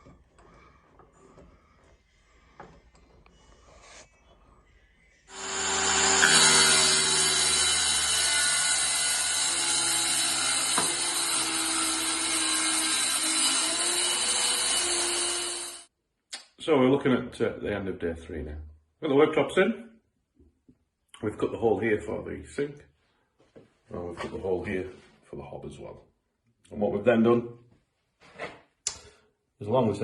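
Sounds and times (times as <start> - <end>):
power tool cutting wood: 5.3 - 15.9.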